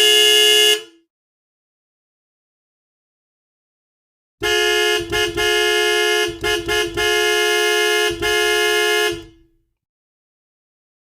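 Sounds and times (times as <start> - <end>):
two-note car horn honking: 0.0 - 1.0, 4.4 - 9.6.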